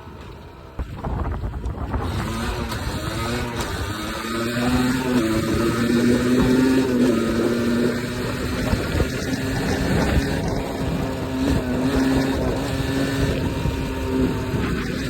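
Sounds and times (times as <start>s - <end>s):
two-stroke engine running: 0.0s - 15.0s
wind on microphone: 0.7s - 15.0s.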